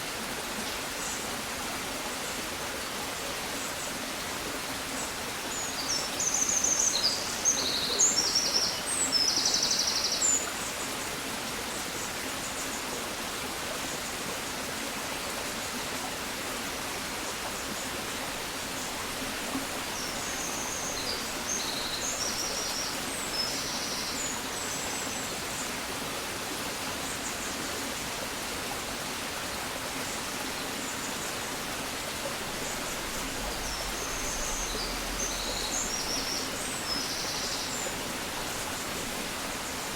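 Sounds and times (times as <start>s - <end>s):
rushing hiss of countryside: 0.0s - 39.9s
songbird singing: 32.6s - 39.3s.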